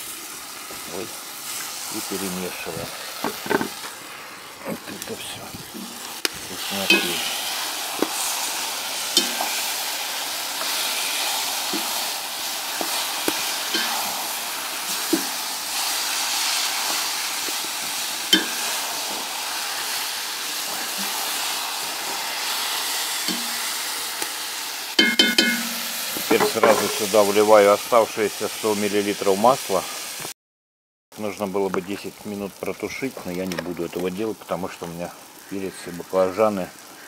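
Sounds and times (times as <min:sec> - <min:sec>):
vegetables sizzling in oil: 0:00.0 - 0:30.3, 0:31.2 - 0:37.0
spoon knocking against pot: 0:25.0 - 0:27.1.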